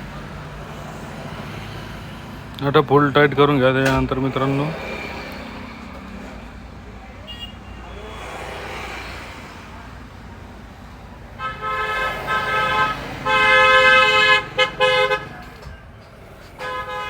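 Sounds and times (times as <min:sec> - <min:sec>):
low traffic hum: 0:00.0 - 0:17.0
vehicle horn honking: 0:07.2 - 0:08.0, 0:11.4 - 0:15.4, 0:16.6 - 0:17.0.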